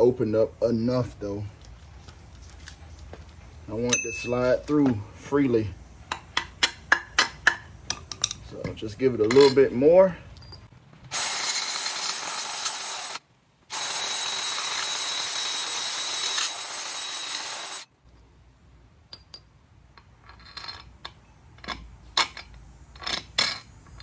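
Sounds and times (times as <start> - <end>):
power drill running: 11.1 - 17.9.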